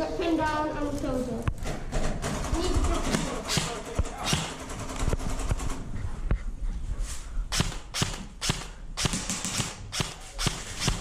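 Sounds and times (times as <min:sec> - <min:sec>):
airsoft gun shots: 0:02.4 - 0:05.6, 0:07.5 - 0:11.0.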